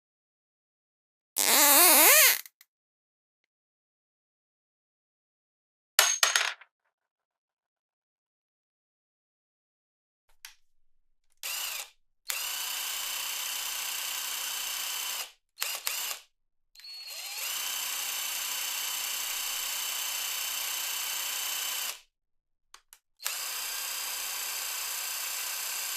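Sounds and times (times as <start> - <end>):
cordless drill motor spinning: 1.4 - 2.4, 11.4 - 16.2, 16.8 - 22.0, 23.2 - 25.9
drill clicks: 11.4 - 12.7, 15.6 - 16.2.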